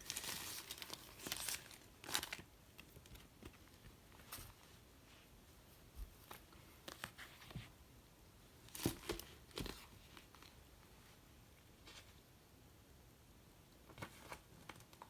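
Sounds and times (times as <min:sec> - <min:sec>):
packaging crinkling and tearing: 0:00.0 - 0:03.3.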